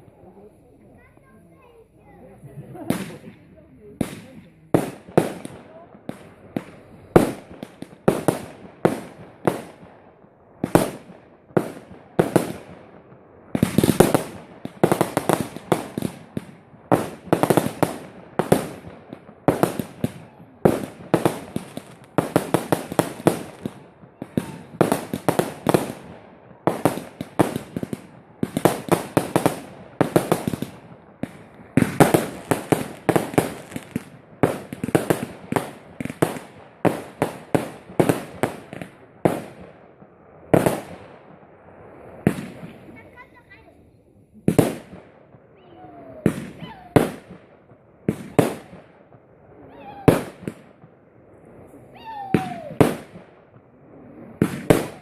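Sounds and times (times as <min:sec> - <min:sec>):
fireworks bursting and crackling: 0:00.0 - 0:55.0.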